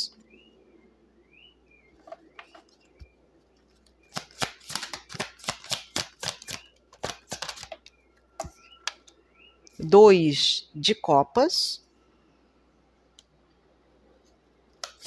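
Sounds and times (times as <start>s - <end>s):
cards being shuffled: 4.1s - 7.8s.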